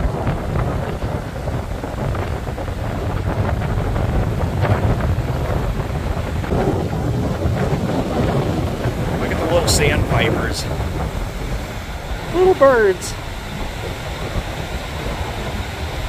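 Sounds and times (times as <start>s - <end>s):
ocean surf: 0.0s - 16.0s
wind buffeting microphone: 0.0s - 16.0s.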